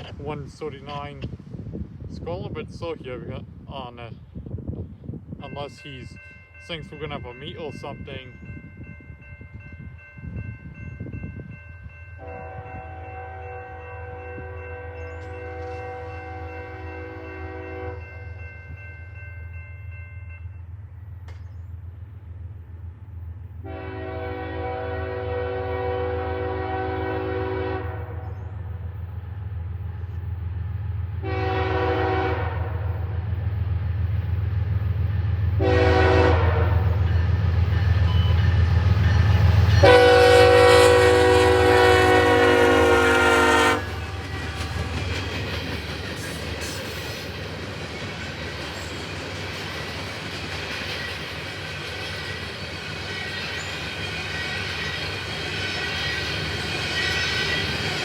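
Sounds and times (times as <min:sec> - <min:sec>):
train rolling by: 0:05.3 - 0:58.0
locomotive horn blasts: 0:12.2 - 0:18.3, 0:23.6 - 0:28.3, 0:31.2 - 0:33.2, 0:35.6 - 0:37.0, 0:39.8 - 0:44.7.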